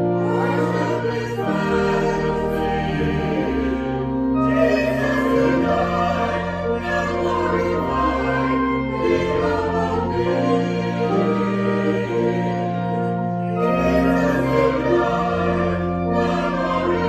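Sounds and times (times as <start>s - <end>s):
choir singing sacred music: 0.0s - 17.0s.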